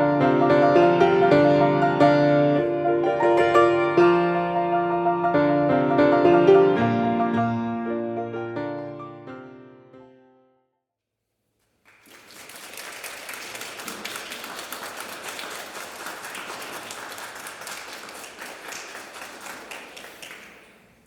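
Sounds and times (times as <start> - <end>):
audience applauding: 11.6 - 21.0.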